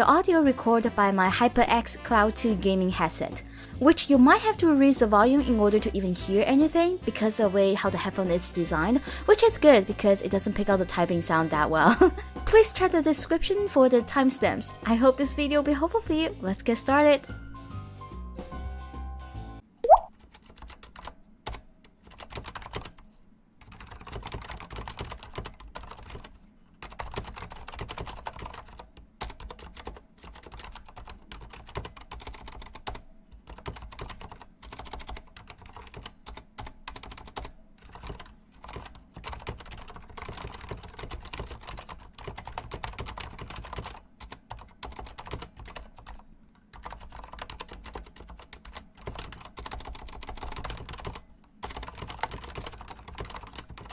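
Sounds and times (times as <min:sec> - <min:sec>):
fast typing on mechanical keyboard: 0:20.2 - 0:23.0, 0:23.6 - 0:53.9.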